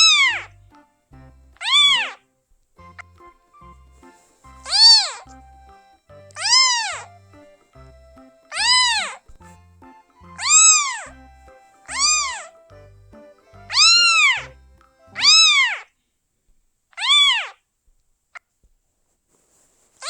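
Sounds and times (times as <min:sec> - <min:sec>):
kitten meowing: 0:00.0 - 0:00.5, 0:01.6 - 0:02.2, 0:04.6 - 0:05.3, 0:06.3 - 0:07.1, 0:08.5 - 0:09.4, 0:10.4 - 0:11.2, 0:11.9 - 0:12.6, 0:13.7 - 0:14.5, 0:15.2 - 0:15.9, 0:17.0 - 0:17.6
low backing music: 0:00.0 - 0:15.7.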